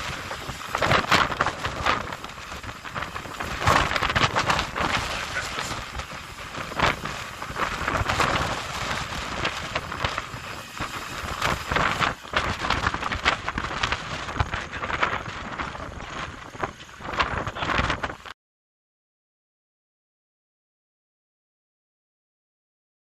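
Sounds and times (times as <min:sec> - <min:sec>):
fire hissing and crackling: 0:00.0 - 0:18.4.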